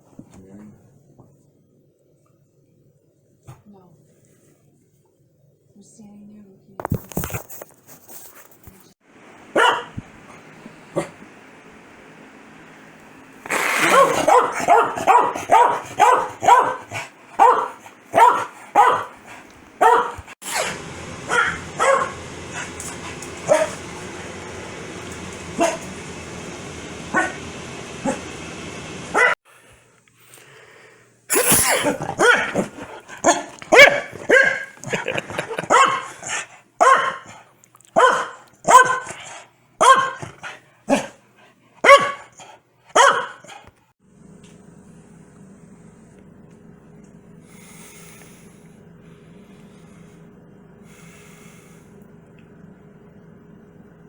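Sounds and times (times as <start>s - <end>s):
dog barking: 9.5s - 10.0s, 13.5s - 19.2s, 19.8s - 23.8s, 25.5s - 25.9s, 27.1s - 27.4s, 28.0s - 28.3s, 29.1s - 29.4s, 31.8s - 41.2s, 41.8s - 43.7s.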